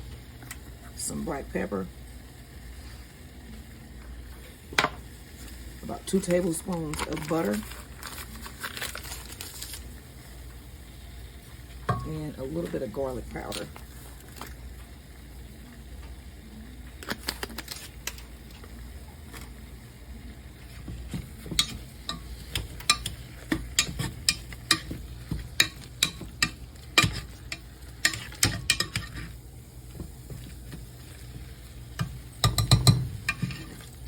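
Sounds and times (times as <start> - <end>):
potatoes being mashed: 20.8 - 29.4
utensil knocking against pot: 32.0 - 33.5.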